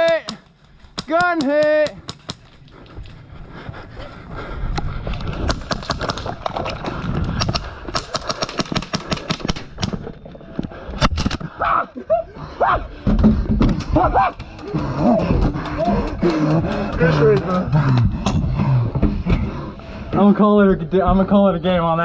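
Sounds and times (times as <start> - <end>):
people shouting: 11.6 - 12.9, 13.9 - 17.7.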